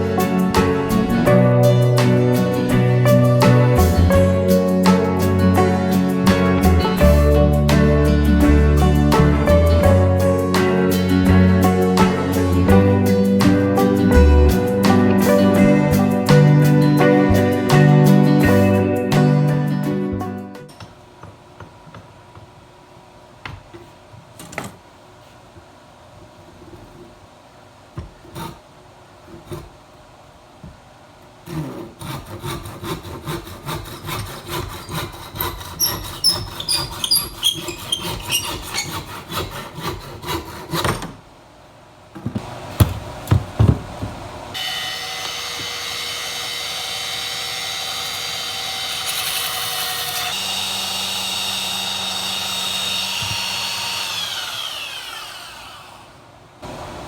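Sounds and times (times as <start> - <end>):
hand saw cutting wood: 28.2 - 28.6, 29.3 - 29.8, 31.4 - 41.2, 44.6 - 56.2
electric power tool running: 44.6 - 56.2.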